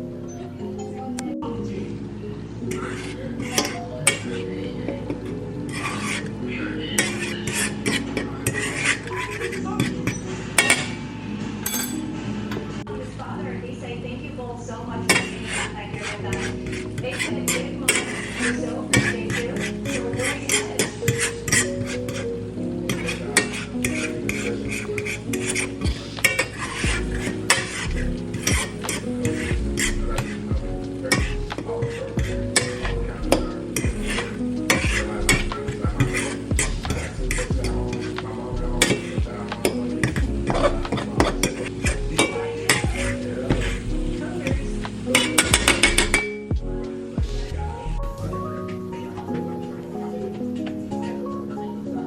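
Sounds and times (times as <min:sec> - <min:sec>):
utensil scraping and clinking in pan: 0:05.7 - 0:06.3, 0:07.0 - 0:11.0, 0:15.1 - 0:22.3, 0:22.9 - 0:30.4, 0:31.1 - 0:32.9, 0:33.7 - 0:38.2, 0:38.8 - 0:43.8, 0:44.4 - 0:46.4
food sizzling: 0:15.1 - 0:47.6
background music with deep beat: 0:20.9 - 0:52.0.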